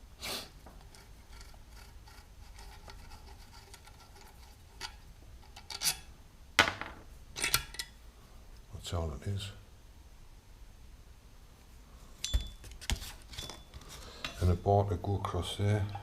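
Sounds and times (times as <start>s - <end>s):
metal tools scraping: 0.8s - 6.1s, 7.4s - 8.0s, 12.2s - 14.6s
metal parts clinking: 4.8s - 6.1s, 7.4s - 8.0s.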